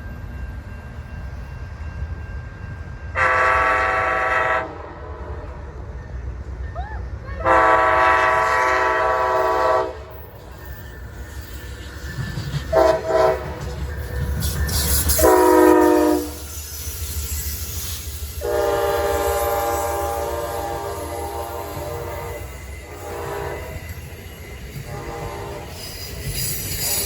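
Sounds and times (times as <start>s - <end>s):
passing train rumble: 0.0s - 27.0s
train air horn blasts: 3.2s - 5.1s, 7.4s - 10.1s, 12.7s - 13.6s, 15.1s - 16.5s, 18.4s - 23.8s, 24.8s - 25.8s.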